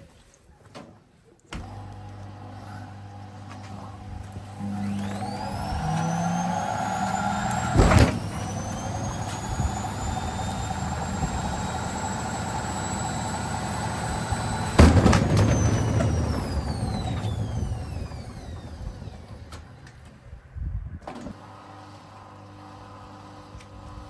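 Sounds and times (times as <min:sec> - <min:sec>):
washing machine spin whine: 0:01.6 - 0:20.3
loud bang: 0:05.2 - 0:12.2, 0:14.2 - 0:19.8.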